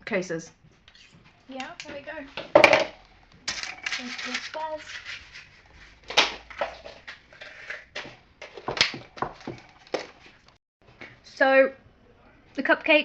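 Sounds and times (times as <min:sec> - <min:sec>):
utensils and metal tin clattering: 0:02.6 - 0:05.5.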